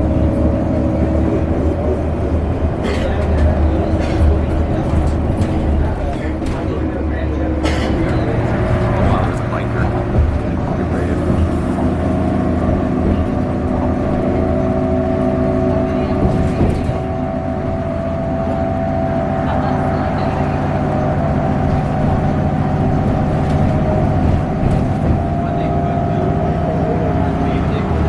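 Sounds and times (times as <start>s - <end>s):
road rumble: 0.0s - 28.0s
vehicle engine drone: 0.0s - 28.0s.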